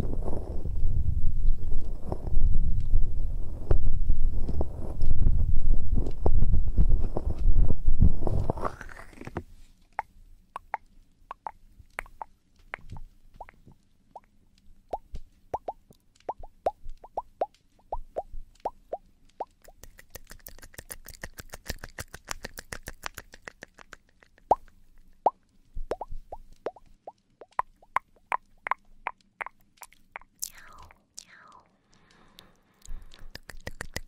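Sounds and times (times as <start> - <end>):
mouth clicks: 9.9 - 14.3, 14.9 - 34.0
wet mouth pops: 10.0 - 13.6, 14.9 - 34.0.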